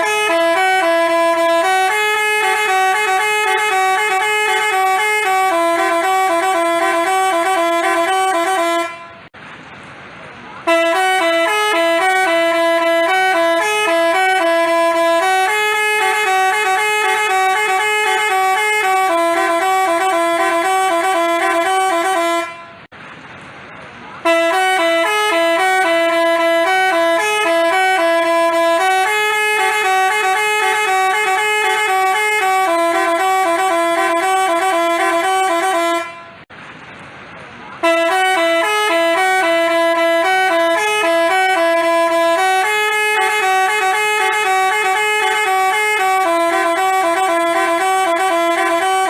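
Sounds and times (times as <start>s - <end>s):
multi-trumpet bus horn tune: 0.0s - 9.4s, 10.6s - 22.9s, 24.2s - 36.5s, 37.8s - 49.0s.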